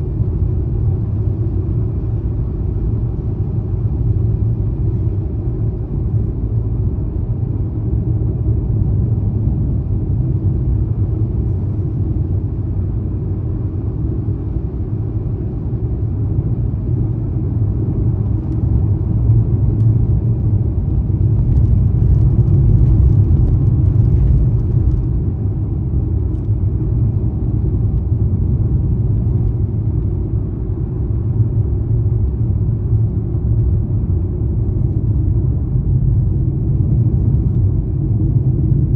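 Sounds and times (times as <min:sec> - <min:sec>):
car engine and road noise: 0:00.0 - 0:38.9.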